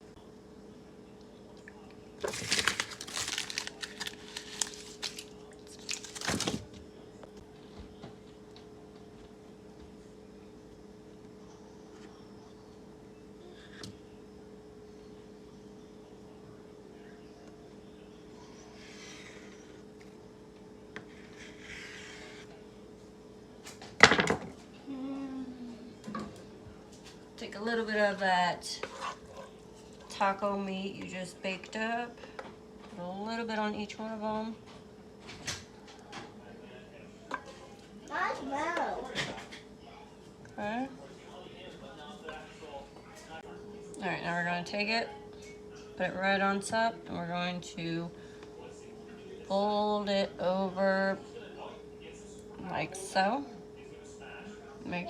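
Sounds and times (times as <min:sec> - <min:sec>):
faint steady hum: 0:00.0 - 0:55.0
packaging crinkling and rustling: 0:02.2 - 0:06.8.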